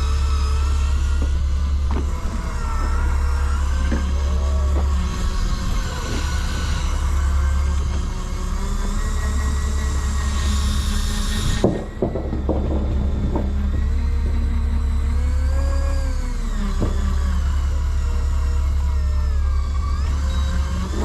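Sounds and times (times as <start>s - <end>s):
boat engine droning: 0.0s - 21.0s
knocks: 1.1s - 3.0s, 11.6s - 14.6s.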